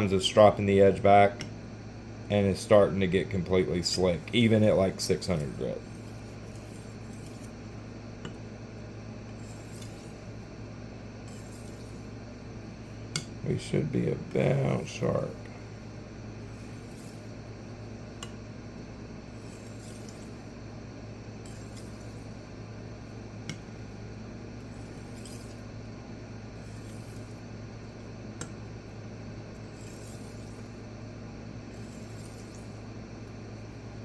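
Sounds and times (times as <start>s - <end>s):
knife scraping on sharpening stone: 5.4s - 7.5s, 9.3s - 10.2s, 11.3s - 12.0s, 21.4s - 22.2s, 24.7s - 25.6s, 29.6s - 30.7s, 31.7s - 32.7s.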